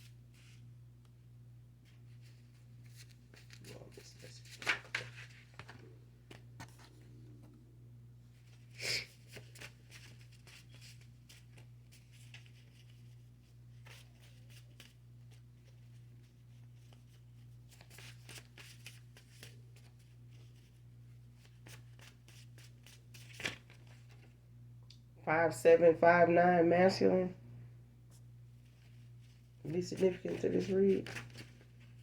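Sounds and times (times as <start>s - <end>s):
low electrical hum: 0.0s - 32.0s
cards being shuffled: 1.9s - 7.1s, 16.8s - 20.8s, 21.4s - 24.3s, 28.7s - 32.0s.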